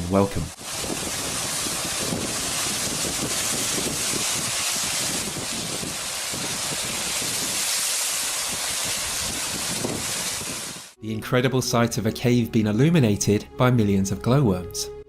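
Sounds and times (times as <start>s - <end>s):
steady rushing noise: 0.3s - 11.0s.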